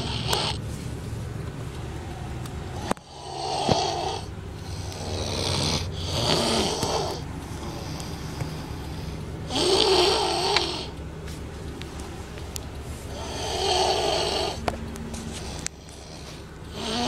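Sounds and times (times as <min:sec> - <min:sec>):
person snoring: 0:03.0 - 0:08.1, 0:09.5 - 0:10.9, 0:13.1 - 0:14.6, 0:15.4 - 0:17.0.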